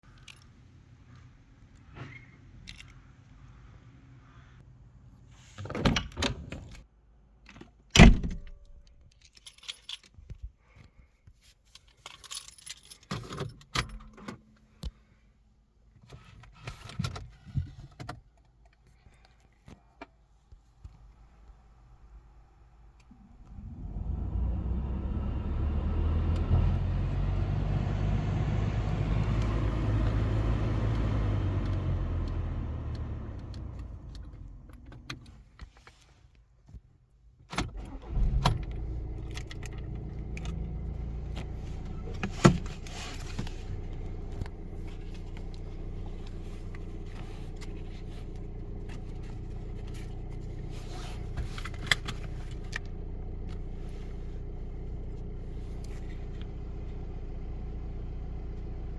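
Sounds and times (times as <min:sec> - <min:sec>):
car engine cranking and idling: 0:21.4 - 0:35.6, 0:37.6 - 0:58.9.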